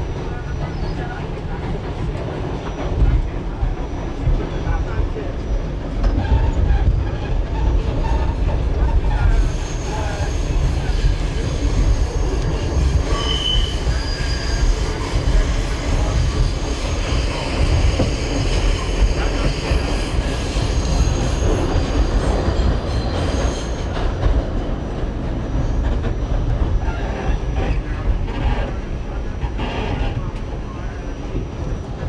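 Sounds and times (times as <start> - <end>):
subway train rumbling: 0.0 - 32.0
high wheel squeals: 8.0 - 23.9.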